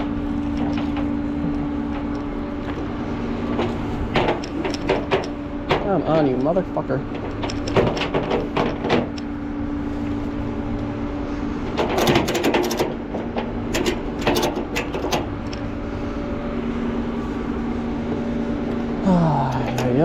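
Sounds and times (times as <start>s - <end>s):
vehicle engine running: 0.0s - 20.0s
rapid clicking and rattling: 3.5s - 9.3s, 11.7s - 15.7s.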